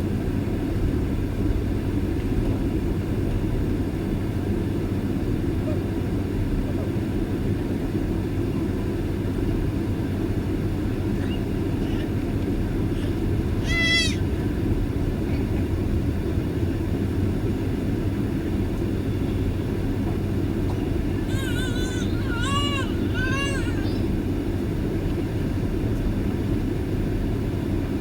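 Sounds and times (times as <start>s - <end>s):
airliner taxiing rumble: 0.0s - 28.0s.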